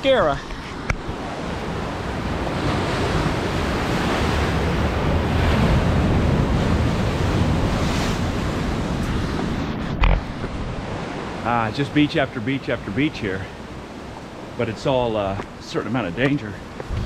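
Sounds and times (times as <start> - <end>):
wind rumbling on microphone: 0.4 - 11.5, 16.2 - 17.0
surf breaking on rocky shore: 1.0 - 17.0.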